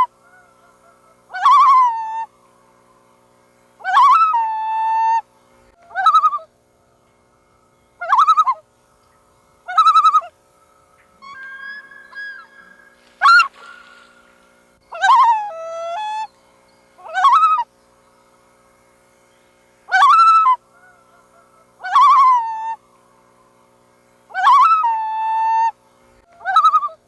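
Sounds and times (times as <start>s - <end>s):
loons calling: 0.0s - 18.6s, 19.2s - 23.6s, 24.2s - 27.0s.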